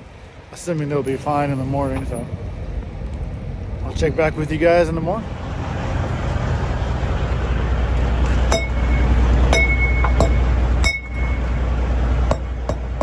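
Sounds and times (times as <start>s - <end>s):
low engine hum: 0.0s - 13.0s
metallic pings on truck wheels: 7.2s - 13.0s.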